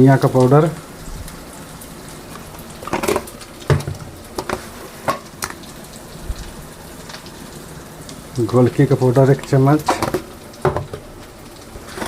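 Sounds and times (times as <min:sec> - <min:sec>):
onion sizzling in a pan: 0:00.0 - 0:12.0
spoon knocking against pan: 0:09.9 - 0:11.0.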